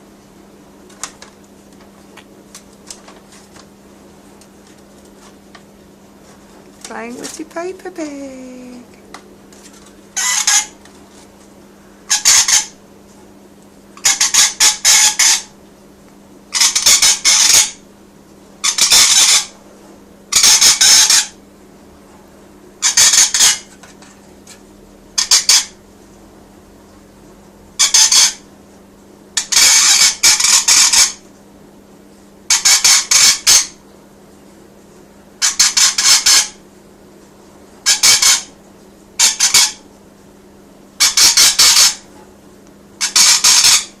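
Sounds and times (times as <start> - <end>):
parrot screeching squawks: 10.2 - 10.7, 12.1 - 12.8, 14.0 - 15.5, 16.5 - 17.8, 18.6 - 19.5, 20.3 - 21.4, 22.8 - 23.7, 25.2 - 25.8, 27.8 - 28.4, 29.4 - 31.2, 32.5 - 33.8, 35.4 - 36.6, 37.8 - 38.5, 39.2 - 39.8, 41.0 - 42.0, 43.0 - 44.0.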